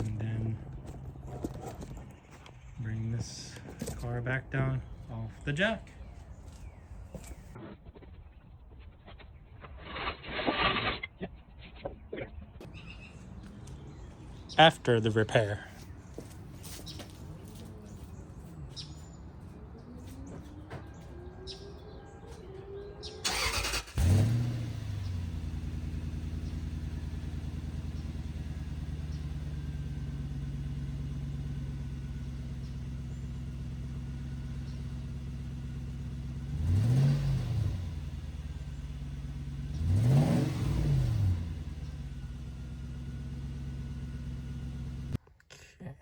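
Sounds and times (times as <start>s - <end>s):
engine revving: 0.0s - 2.2s, 21.6s - 45.2s
car engine cranking and idling: 0.0s - 7.6s, 12.6s - 45.2s.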